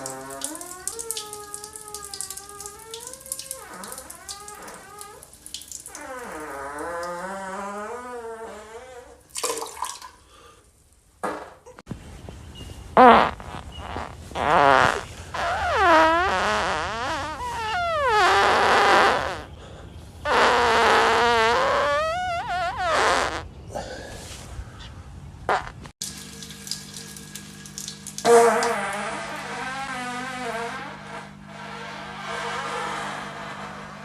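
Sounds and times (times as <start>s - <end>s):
man farting: 0.0s - 9.9s, 11.2s - 11.8s, 13.0s - 19.6s, 20.3s - 23.5s, 25.5s - 25.9s, 28.2s - 34.0s.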